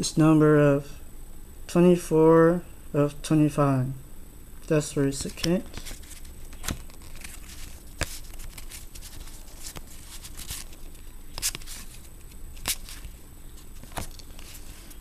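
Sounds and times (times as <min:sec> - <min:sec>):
trading cards rustling: 0:04.6 - 0:15.0
card stock clicking and snapping: 0:05.2 - 0:13.2.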